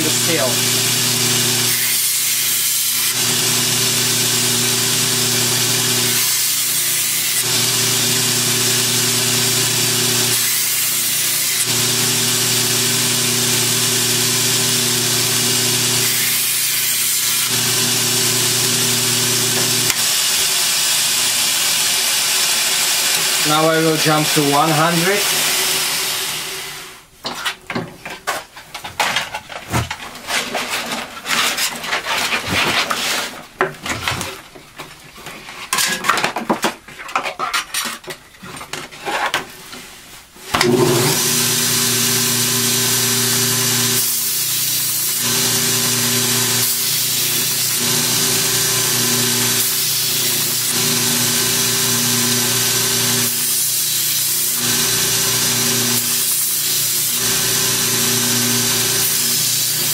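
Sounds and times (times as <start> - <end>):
belt grinder humming and hissing: 0.0 - 27.0, 40.6 - 59.9.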